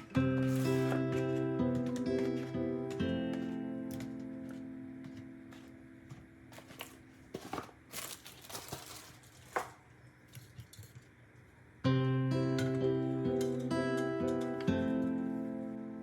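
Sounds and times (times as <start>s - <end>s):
guitar chord: 0.0s - 5.6s, 11.9s - 16.0s
plastic packaging crinkling: 6.6s - 9.8s.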